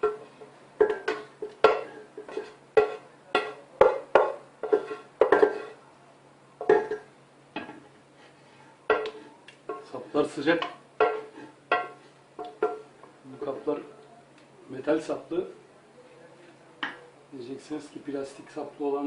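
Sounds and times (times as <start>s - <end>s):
spoon clanking against metal pots: 0.0s - 5.8s, 6.6s - 7.8s, 8.9s - 13.6s.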